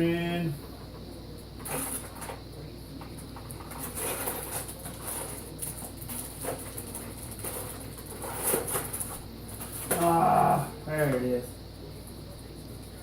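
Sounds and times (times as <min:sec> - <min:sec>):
rummaging through household items: 0:03.3 - 0:11.3.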